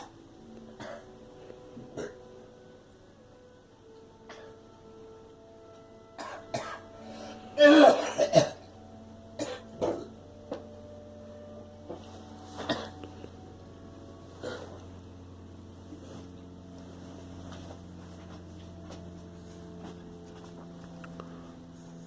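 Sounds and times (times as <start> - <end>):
girl coughing: 0.8 - 1.1, 1.9 - 2.2, 4.3 - 4.6, 6.2 - 6.8, 7.6 - 8.7, 9.4 - 10.1, 12.6 - 13.0, 14.4 - 14.8.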